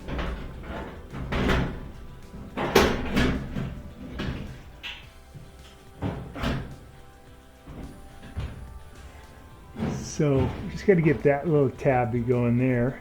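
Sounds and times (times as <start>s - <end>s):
plastic panel clunking and clattering: 0.0s - 7.0s, 7.6s - 11.7s.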